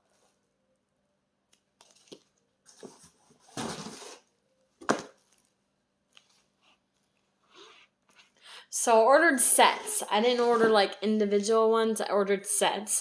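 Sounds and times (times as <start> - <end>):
clicks and rustles of packages: 1.8 - 6.5
sliding scrape: 9.5 - 10.9.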